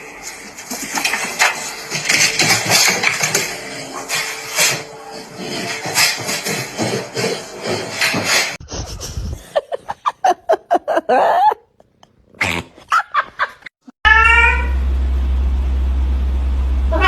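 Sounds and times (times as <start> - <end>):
cat meowing: 14.0 - 14.8.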